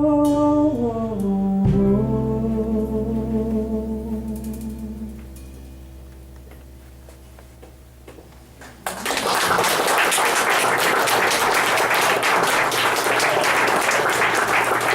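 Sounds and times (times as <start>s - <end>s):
band music: 0.0s - 8.9s
audience applause: 8.6s - 14.9s.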